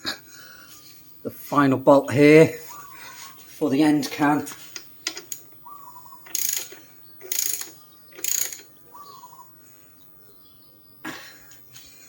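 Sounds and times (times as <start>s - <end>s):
socket ratchet clicking: 4.8s - 5.6s, 6.2s - 8.7s.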